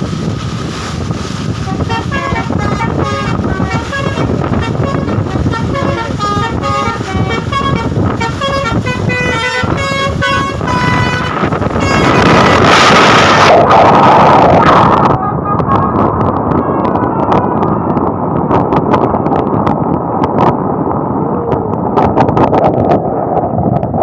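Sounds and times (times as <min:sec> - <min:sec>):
road and engine noise: 0:00.0 - 0:24.0
musical bus air horn: 0:01.6 - 0:13.5, 0:15.1 - 0:17.0.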